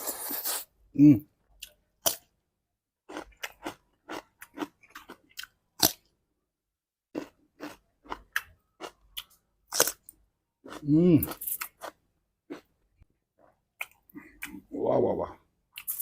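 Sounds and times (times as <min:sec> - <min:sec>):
crunchy wet chewing: 0:03.1 - 0:06.0, 0:07.1 - 0:12.7.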